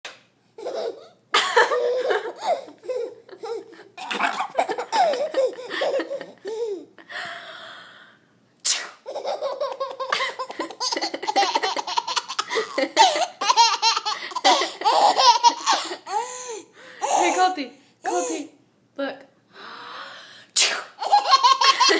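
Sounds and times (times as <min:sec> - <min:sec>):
baby laughing: 0:00.6 - 0:07.0, 0:09.0 - 0:16.3, 0:21.0 - 0:21.9
sneeze: 0:08.6 - 0:09.0, 0:20.6 - 0:21.0.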